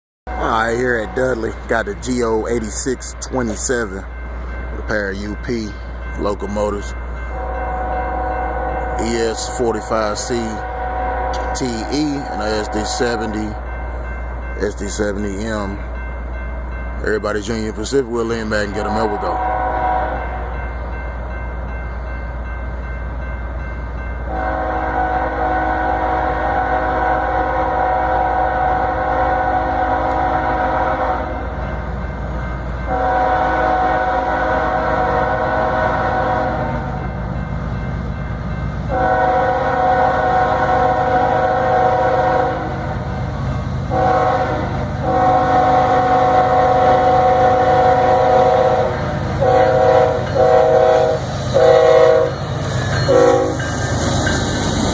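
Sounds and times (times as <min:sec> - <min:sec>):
diesel locomotive rumble: 0:00.3 - 0:54.9
locomotive air horn blasts: 0:07.3 - 0:13.3, 0:19.0 - 0:20.2, 0:24.3 - 0:31.4, 0:32.9 - 0:36.8, 0:38.9 - 0:42.8, 0:43.9 - 0:52.4, 0:53.0 - 0:53.7.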